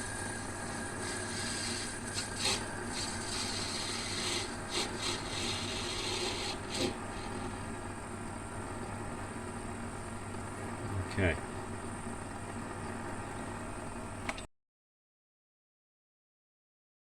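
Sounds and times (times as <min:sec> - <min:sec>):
metal lathe humming: 0:00.0 - 0:08.0
cutting tool scraping brass: 0:01.0 - 0:07.4.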